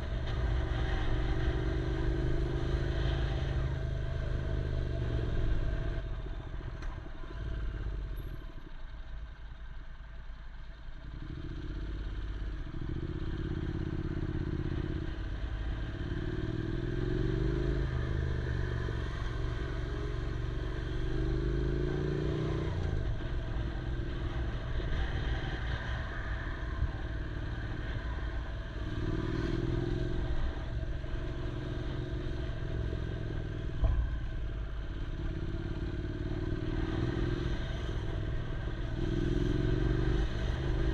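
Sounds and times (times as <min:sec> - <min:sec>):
motorcycle engine revving: 0:11.1 - 0:40.9.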